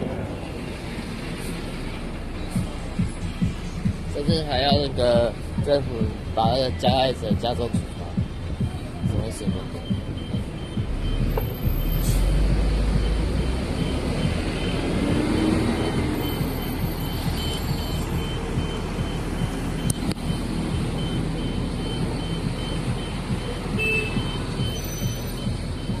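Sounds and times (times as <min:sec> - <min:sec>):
heavy vehicle engine rumbling: 0:00.0 - 0:26.0
traffic noise: 0:00.0 - 0:26.0
short high electronic beeps: 0:23.4 - 0:26.0.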